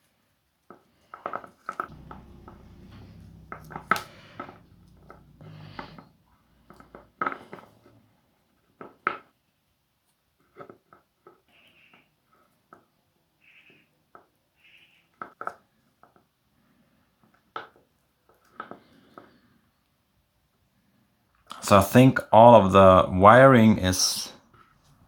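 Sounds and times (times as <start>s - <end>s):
low rumble: 1.9s - 6.1s.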